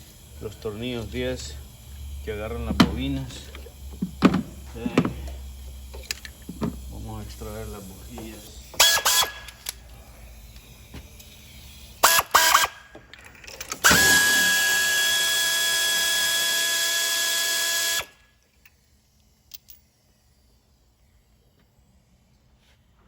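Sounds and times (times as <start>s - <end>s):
power tool motor running: 0.0s - 9.6s, 11.4s - 12.9s, 13.8s - 18.2s
power tool trigger blips: 8.8s - 9.7s, 12.0s - 12.9s, 13.8s - 18.2s.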